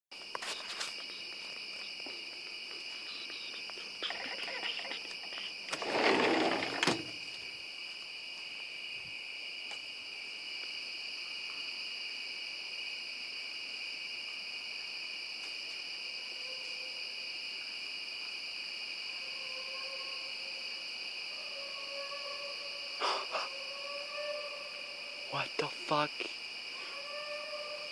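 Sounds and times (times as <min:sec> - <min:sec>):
night insects chorus: 0:00.1 - 0:27.9
short rough noise burst: 0:05.7 - 0:07.1
distant animal howling: 0:19.1 - 0:25.3, 0:26.7 - 0:27.9.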